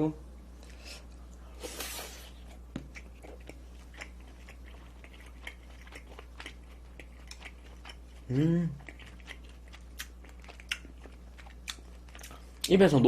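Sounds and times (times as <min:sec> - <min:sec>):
chewing with mouth clicks: 0:02.3 - 0:12.8.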